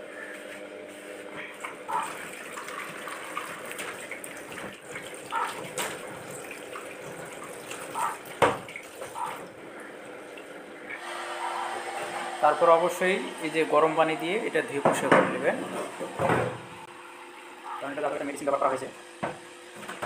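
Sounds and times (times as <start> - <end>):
water running from a tap: 1.6 - 10.8.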